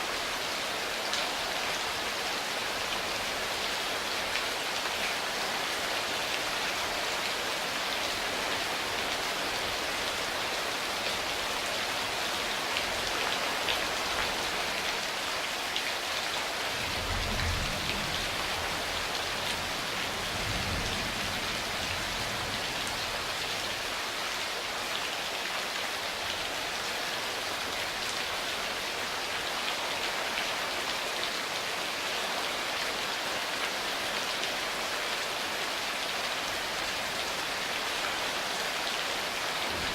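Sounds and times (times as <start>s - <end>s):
heavy rain pattering: 0.1s - 39.9s
distant thunder rumble: 16.8s - 19.5s.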